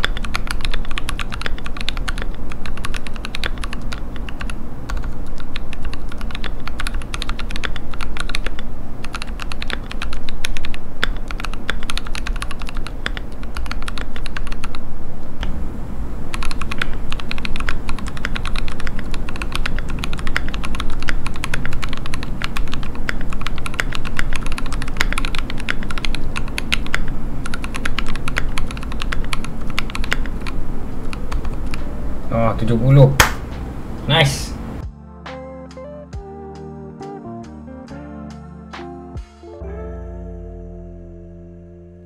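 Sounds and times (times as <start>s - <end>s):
fast typing on mechanical keyboard: 0.0s - 14.9s, 16.3s - 31.8s.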